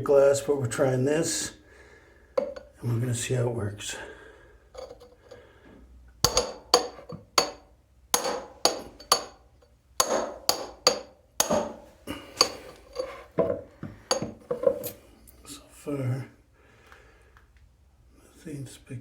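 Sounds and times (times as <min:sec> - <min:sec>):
metal tip tapping on glass: 0:02.4 - 0:02.7, 0:06.3 - 0:07.6, 0:08.2 - 0:09.4, 0:10.0 - 0:11.7.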